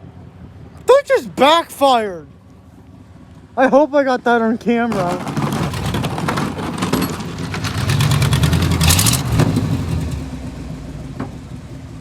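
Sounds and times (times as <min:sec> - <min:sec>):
truck engine revving: 0:07.5 - 0:10.5.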